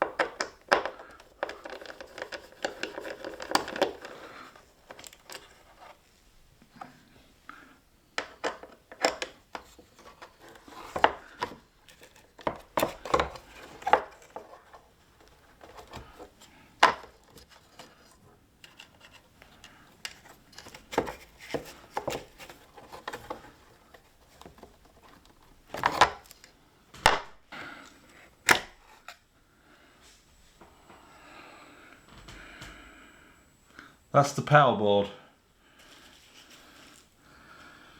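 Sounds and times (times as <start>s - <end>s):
small tools and parts clicking: 0.0s - 6.0s.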